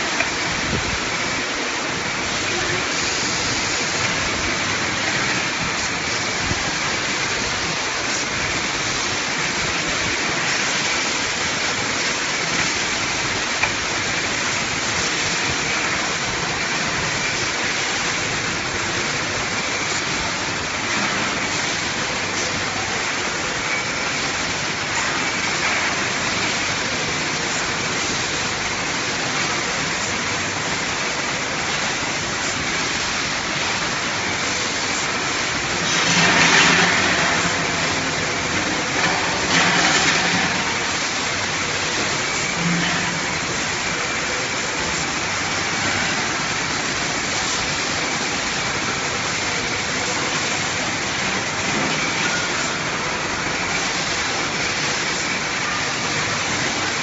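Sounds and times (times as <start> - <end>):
glass cutting machine rushing: 35.7 - 44.1.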